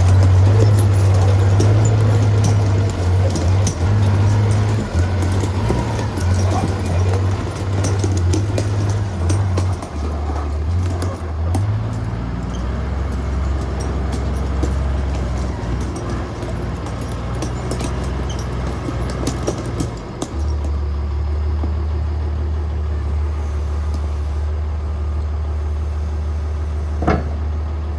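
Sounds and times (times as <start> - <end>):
engine clicks and knocks: 0.0 - 22.1
diesel engine idling: 0.0 - 27.0.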